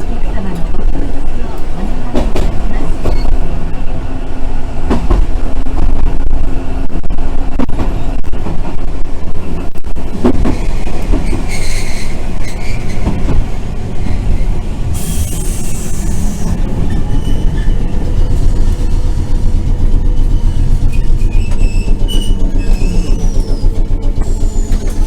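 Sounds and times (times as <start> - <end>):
tram rumbling on rails: 0.0 - 25.0
high wheel squeal: 11.2 - 13.2, 14.0 - 18.0, 20.2 - 25.0.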